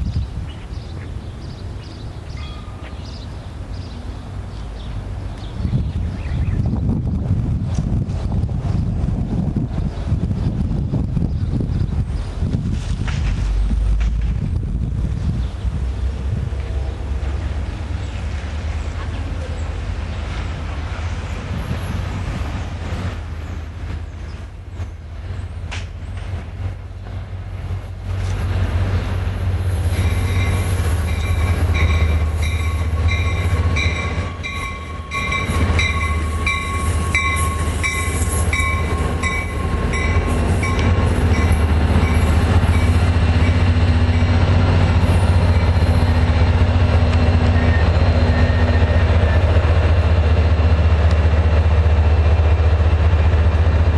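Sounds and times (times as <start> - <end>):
diesel train engine rumble: 0.0 - 53.9
wheels squealing: 29.7 - 49.7.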